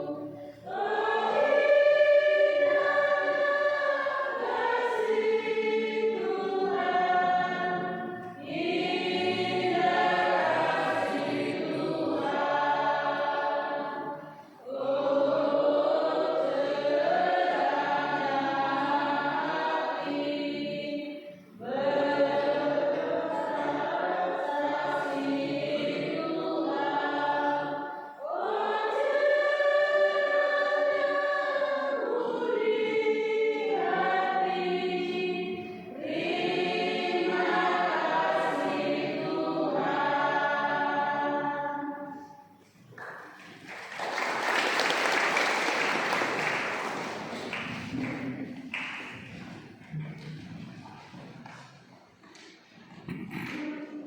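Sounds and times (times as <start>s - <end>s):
choir singing: 0.0s - 42.6s.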